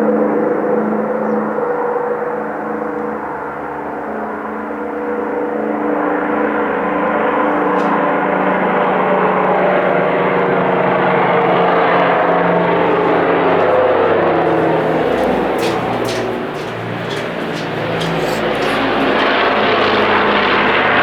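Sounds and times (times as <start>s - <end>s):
propeller plane engines droning: 12.6s - 21.0s.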